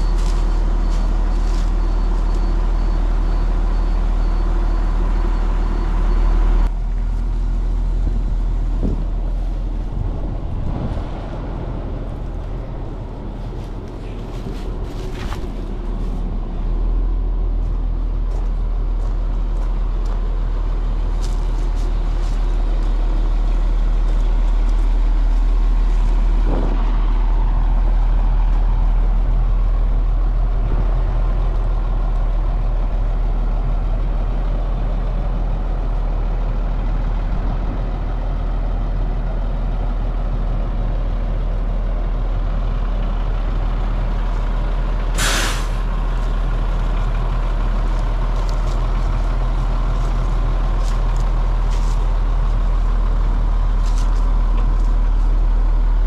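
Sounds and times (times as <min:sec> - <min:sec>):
truck engine running: 0:00.0 - 0:56.0
air brakes hissing: 0:45.1 - 0:45.9.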